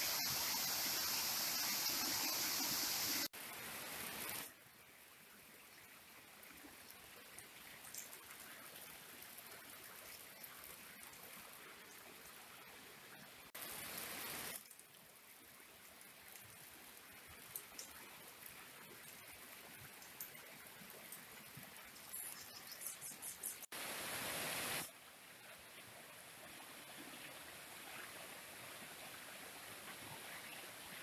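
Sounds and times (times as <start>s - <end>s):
stream water rushing: 23.7s - 25.0s.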